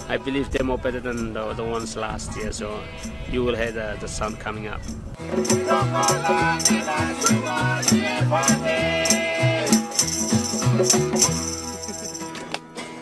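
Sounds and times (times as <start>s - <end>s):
voices singing together: 0.0s - 11.2s
string band playing: 1.3s - 13.0s
plucked bass line: 4.8s - 12.6s
rattling percussion: 4.8s - 12.6s.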